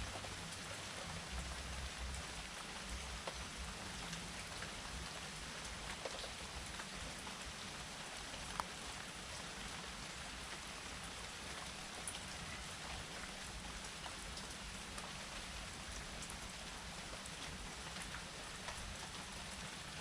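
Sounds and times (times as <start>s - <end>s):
raindrops pattering close by: 0.0s - 20.0s
steady rain falling: 0.0s - 20.0s.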